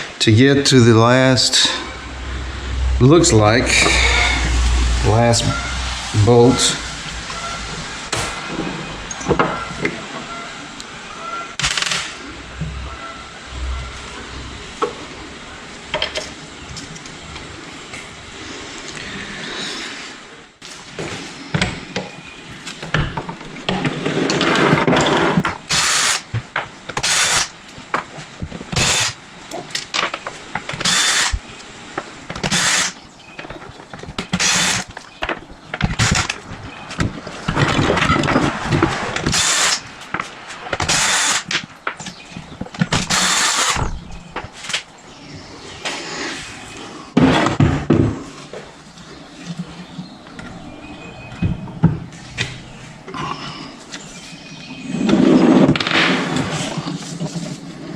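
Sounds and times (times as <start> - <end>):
power tool spinning bolts: 25.7 - 26.3, 27.0 - 27.5, 28.7 - 29.2, 30.8 - 31.4, 32.4 - 33.0, 34.3 - 34.9, 39.2 - 39.8, 40.8 - 41.6, 42.9 - 43.9.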